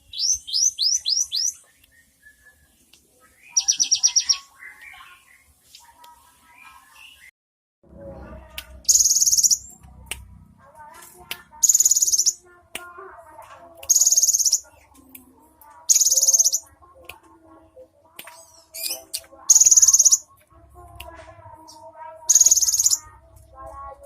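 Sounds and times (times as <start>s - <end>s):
faint lower bird chirps: 0.0s - 5.5s, 8.9s - 9.7s, 11.6s - 12.4s, 13.9s - 14.7s, 15.9s - 16.7s, 22.3s - 23.1s.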